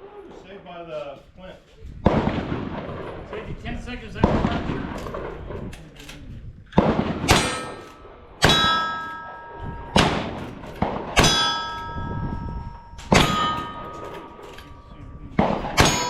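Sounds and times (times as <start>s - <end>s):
gunshots: 2.0s - 3.5s, 4.2s - 5.6s, 6.8s - 12.0s, 13.0s - 16.0s
steel target ringing: 7.2s - 16.0s.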